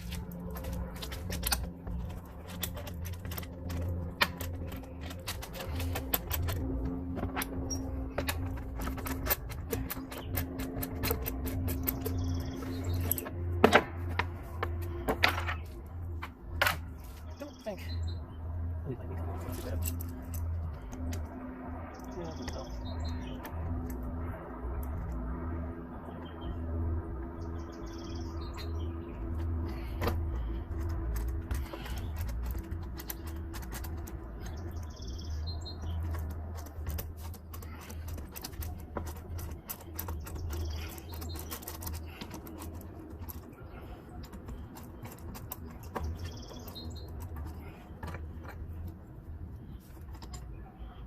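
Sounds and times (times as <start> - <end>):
sharp clicks and knocks: 0.0 - 17.0, 28.6 - 49.1
birds chirping: 0.0 - 51.0
steady low rumble: 0.0 - 51.0.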